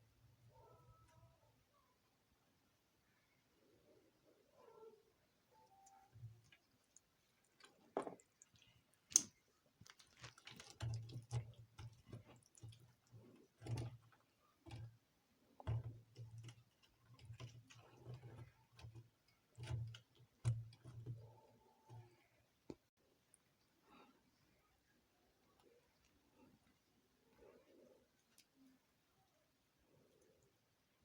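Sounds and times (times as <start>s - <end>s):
person chewing food: 5.8s - 21.2s
soft low chewing thumps: 5.8s - 24.1s.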